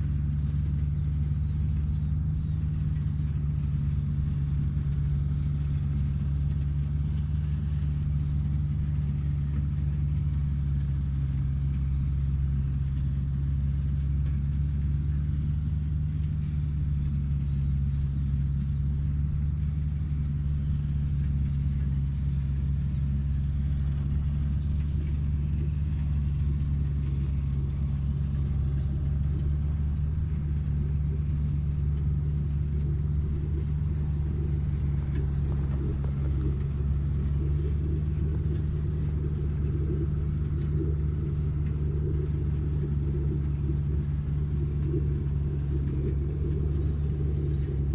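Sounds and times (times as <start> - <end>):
tractor engine running: 0.0 - 47.9
thin high whine: 23.2 - 47.9.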